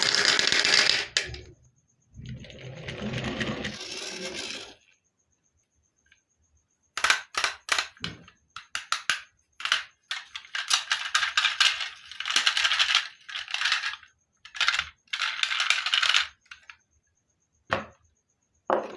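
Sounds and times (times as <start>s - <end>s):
marbles rattling down wooden run: 0.0s - 1.4s, 2.5s - 4.9s, 8.7s - 16.7s.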